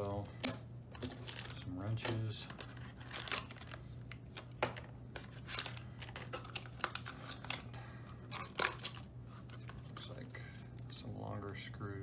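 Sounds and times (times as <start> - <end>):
packaging rustling: 1.1 - 1.7.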